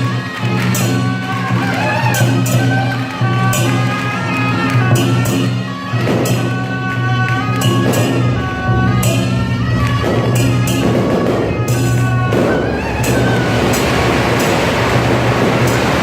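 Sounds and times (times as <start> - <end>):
percussion strikes: 0.0 - 16.0
low drone: 12.3 - 16.0.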